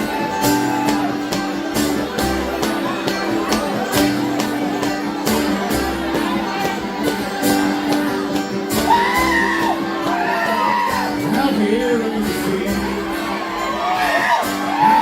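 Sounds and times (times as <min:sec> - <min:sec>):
crowd whoops and shouts: 0:00.0 - 0:01.6, 0:05.7 - 0:11.5, 0:12.6 - 0:15.0
guitar strumming: 0:00.0 - 0:15.0
live band playing: 0:00.0 - 0:15.0.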